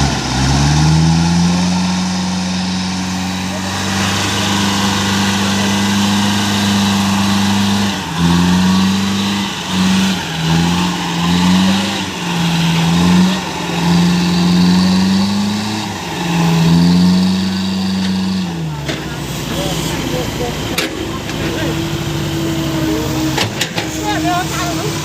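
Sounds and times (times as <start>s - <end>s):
truck engine revving: 0.0s - 25.0s.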